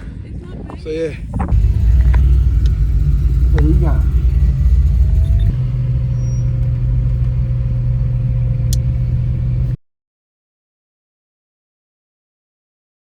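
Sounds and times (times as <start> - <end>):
car engine running: 1.5 - 9.8.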